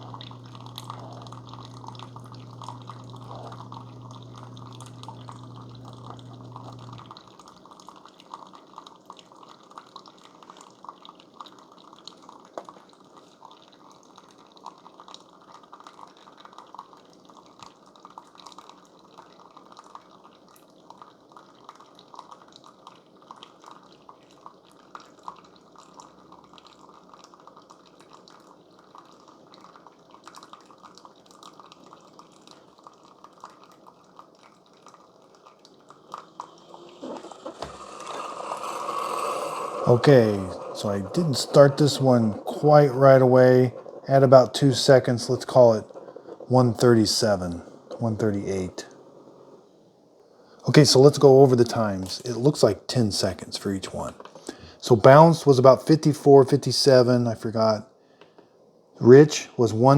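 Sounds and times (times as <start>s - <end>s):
water pump humming: 0.0s - 7.7s, 35.1s - 49.8s
coffee dripping into cup: 0.0s - 49.2s.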